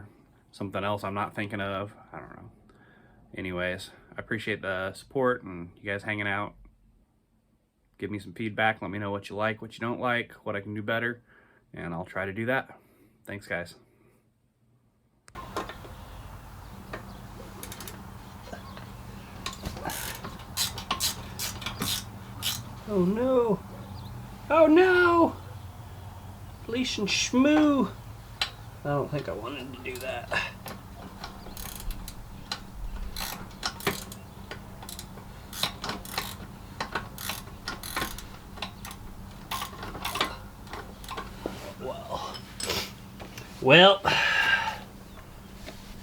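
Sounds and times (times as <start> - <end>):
hand tools on metal: 15.4 - 25.2, 26.5 - 43.5
metal parts clattering: 30.6 - 41.4.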